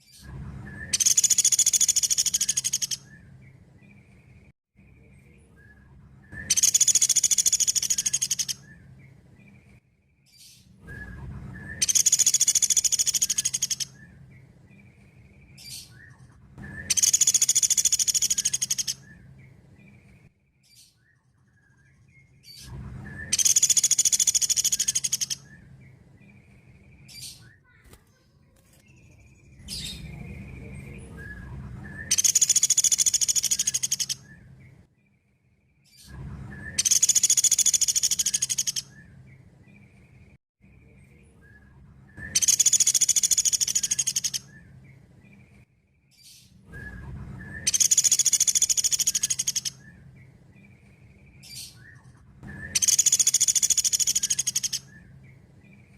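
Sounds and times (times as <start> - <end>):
woodpecker trilling call: 0.8 - 3.2, 6.3 - 8.8, 11.7 - 14.1, 15.6 - 19.2, 23.2 - 25.6, 31.9 - 34.4, 36.8 - 39.1, 42.2 - 44.7, 47.5 - 50.0, 51.5 - 55.9.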